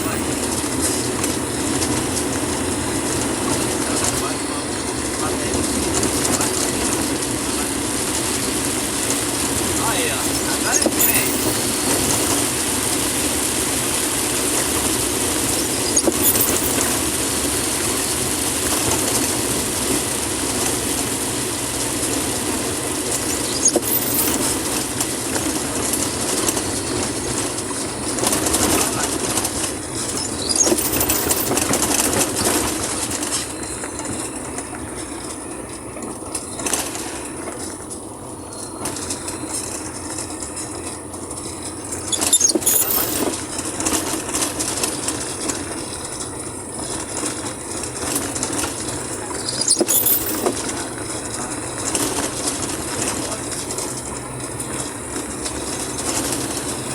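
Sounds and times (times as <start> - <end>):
vehicle engine and road noise: 0.0 - 56.9
rain and water spray hiss: 6.2 - 33.4.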